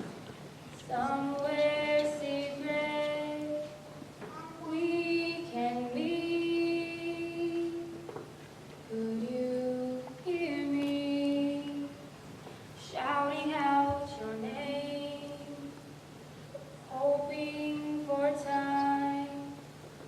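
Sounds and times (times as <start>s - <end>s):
women singing long held notes: 0.8s - 3.9s, 4.7s - 8.0s.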